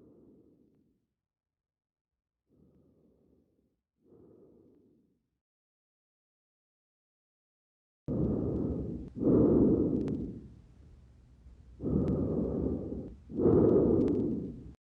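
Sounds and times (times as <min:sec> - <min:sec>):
breath sounds through stethoscope: 0:02.5 - 0:05.1, 0:08.1 - 0:11.0, 0:11.7 - 0:14.8.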